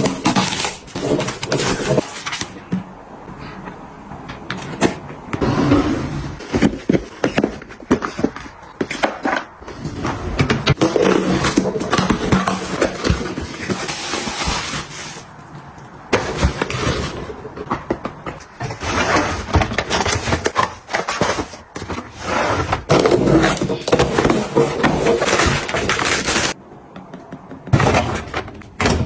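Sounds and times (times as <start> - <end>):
packaging rustling: 22.8 - 26.6.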